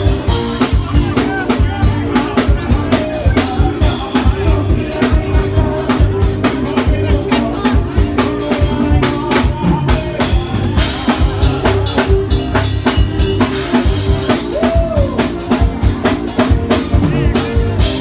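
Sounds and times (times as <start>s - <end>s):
drum kit beat: 0.0s - 18.0s.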